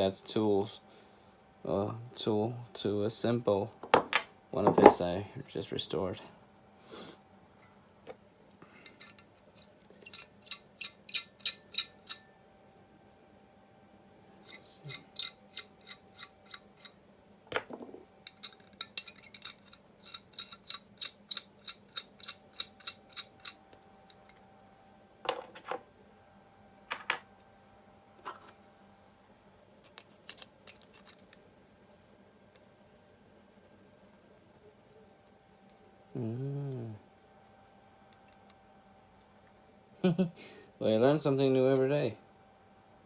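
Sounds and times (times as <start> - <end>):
single knocks: 3.8 - 5.0
screwdriver metallic clicks: 10.0 - 12.2, 18.3 - 23.6.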